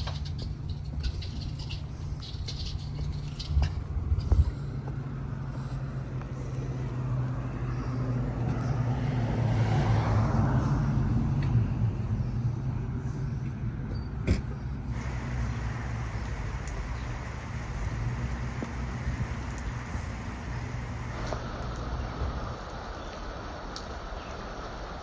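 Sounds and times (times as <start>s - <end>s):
steady low hum: 0.0s - 21.4s
vehicle passing: 5.0s - 13.7s, 14.9s - 21.4s.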